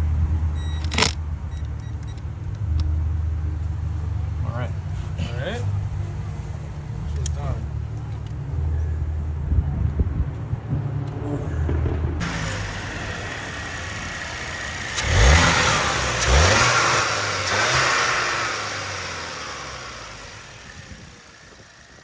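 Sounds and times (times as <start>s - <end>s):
car engine revving: 10.7s - 22.0s.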